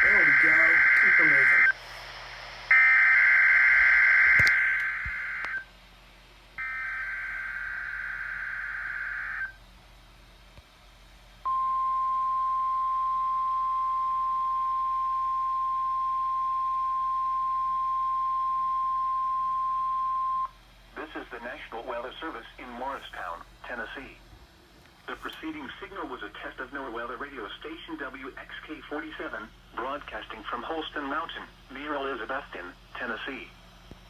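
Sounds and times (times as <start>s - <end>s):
raspy digital data bursts: 0.0s - 1.7s
steady alert tone: 0.0s - 1.7s.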